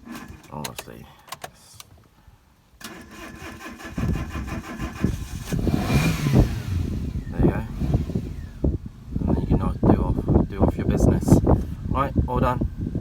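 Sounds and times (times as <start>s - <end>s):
car engine cranking and starting: 0.0s - 1.9s, 2.8s - 11.8s
clicks: 0.2s - 2.1s.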